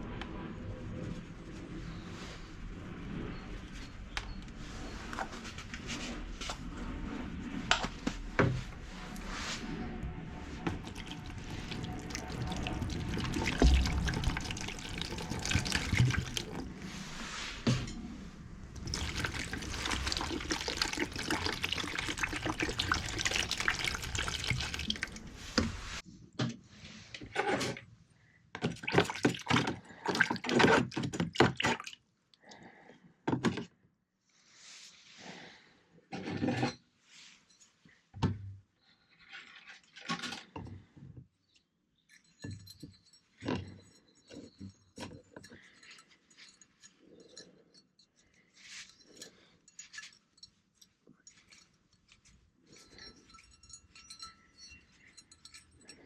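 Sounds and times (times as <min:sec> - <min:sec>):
scraping strokes: 0:00.0 - 0:26.0
water running and splashing: 0:10.4 - 0:17.2, 0:18.7 - 0:26.0, 0:28.8 - 0:30.6.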